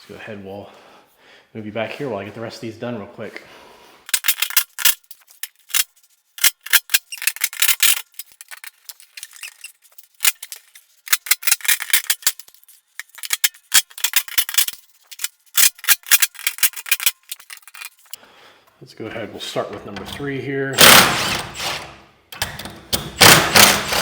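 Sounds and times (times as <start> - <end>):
handling noise clicks and rattles: 4.1 - 18.2.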